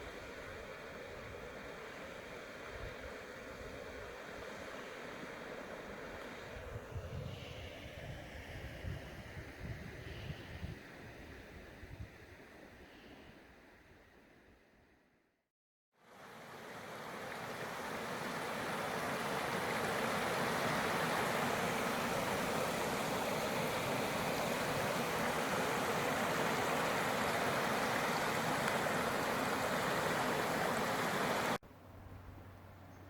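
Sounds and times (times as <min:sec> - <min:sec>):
creek water rushing: 0:00.0 - 0:08.8, 0:16.0 - 0:31.6.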